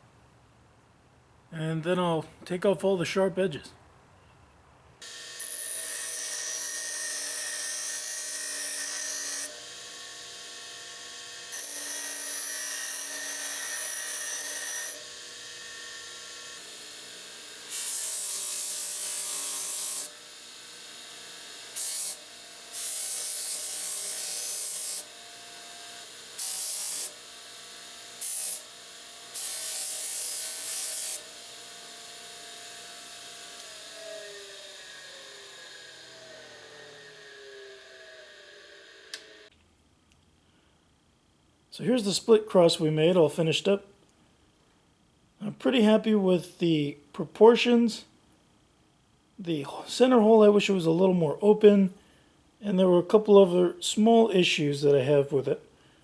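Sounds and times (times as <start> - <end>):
power grinder whining: 5.0 - 39.5.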